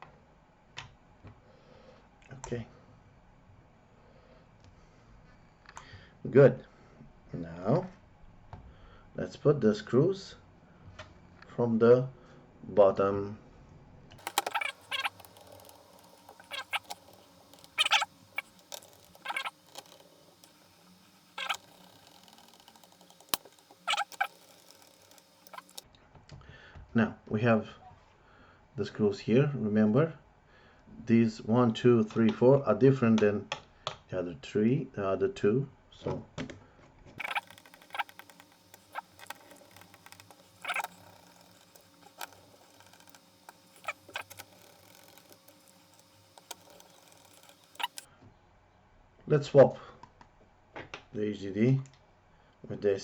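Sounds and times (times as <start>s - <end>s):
screws scraping and clicking: 14.2s - 25.8s, 37.2s - 48.1s.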